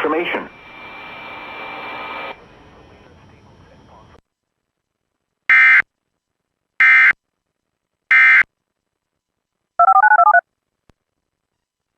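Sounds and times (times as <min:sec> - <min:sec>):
touch-tone beeps: 0:09.8 - 0:10.4.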